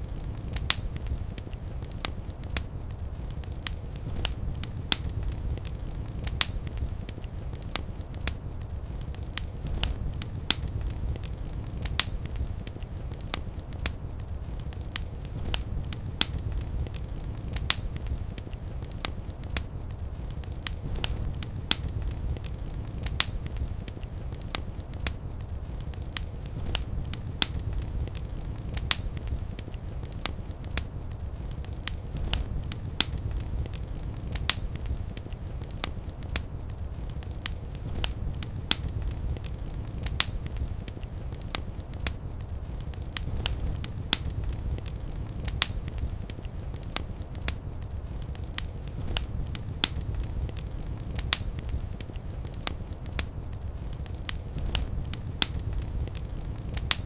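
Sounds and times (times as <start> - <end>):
fire crackling: 0.0 - 57.0.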